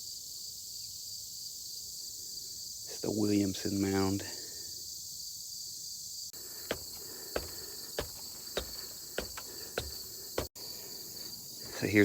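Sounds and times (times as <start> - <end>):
crickets and insects chirring: 0.0 - 12.0
footsteps climbing steps: 6.6 - 10.6.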